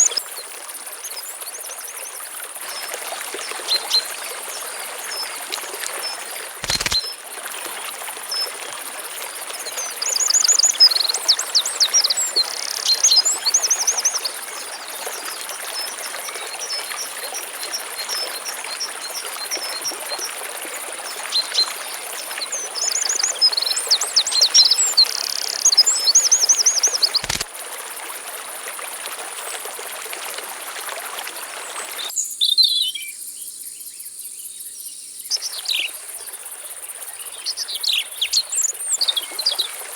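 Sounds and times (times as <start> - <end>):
flowing water: 0.0 - 32.1, 35.3 - 39.9
insect drone: 3.9 - 10.2, 24.4 - 29.4
songbird singing: 9.6 - 14.4, 22.4 - 27.4, 31.9 - 36.2.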